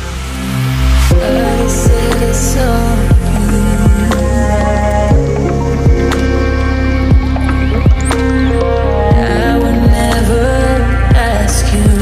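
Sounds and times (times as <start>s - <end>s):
sustained synth tones: 0.0s - 12.0s
deep drum beat: 1.1s - 2.5s, 3.1s - 4.5s, 5.1s - 10.2s.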